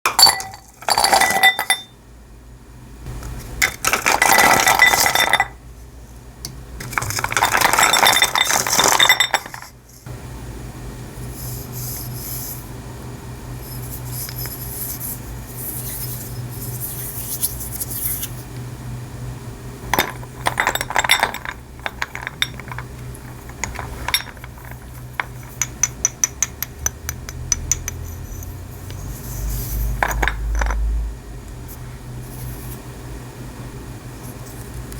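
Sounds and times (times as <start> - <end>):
glass clinks: 0.1 - 1.9, 7.5 - 9.7, 20.0 - 22.8, 23.6 - 28.0
low hum with faint crackling: 0.1 - 34.9.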